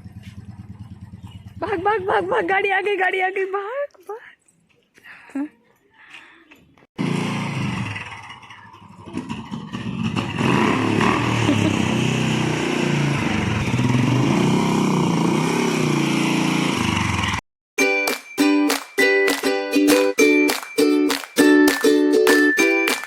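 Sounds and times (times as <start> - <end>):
vehicle engine revving: 7.0 - 17.4.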